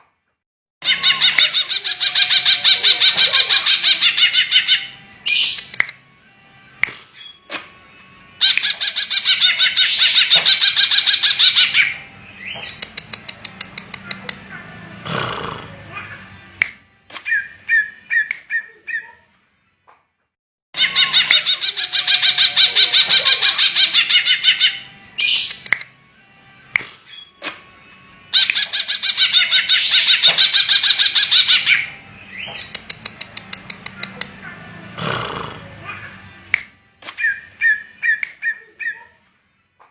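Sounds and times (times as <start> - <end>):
sharp clicks: 12.6 - 14.4, 25.4 - 25.9, 32.6 - 34.4.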